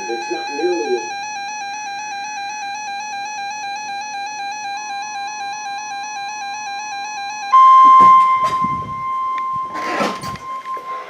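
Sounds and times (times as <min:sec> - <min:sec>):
higher steady alarm tone: 0:00.0 - 0:11.0
fluttering electronic alert tone: 0:07.6 - 0:11.0.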